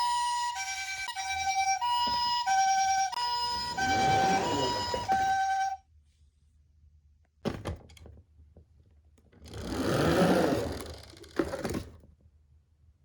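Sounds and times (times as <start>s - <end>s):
toy electronic two-tone siren: 0.0s - 5.8s
toy car rolling on cardboard: 3.4s - 5.8s, 9.3s - 12.1s
toy car clack: 9.5s - 12.0s.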